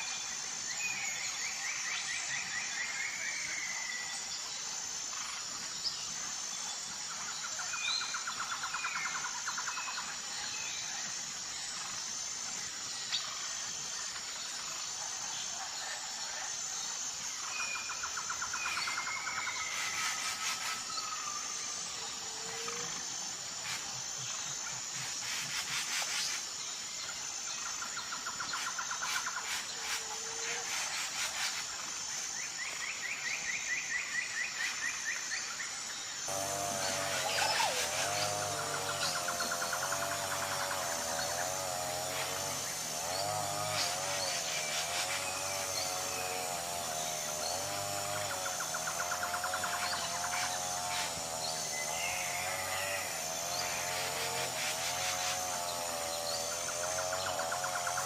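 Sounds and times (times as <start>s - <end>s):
high insect trill: 0.0s - 58.0s
rapid pulsed calls: 36.3s - 58.0s.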